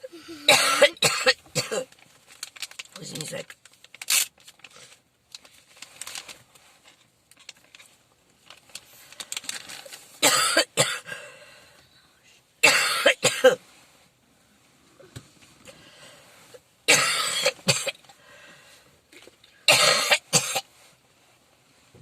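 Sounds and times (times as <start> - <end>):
person coughing: 0.0 - 1.9, 10.2 - 11.3, 12.6 - 13.6, 16.9 - 18.0, 19.7 - 20.6.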